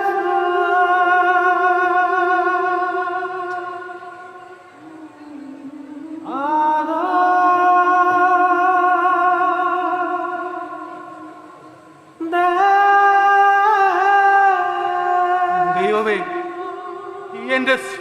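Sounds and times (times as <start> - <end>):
wordless sung held notes: 0.0 - 18.0.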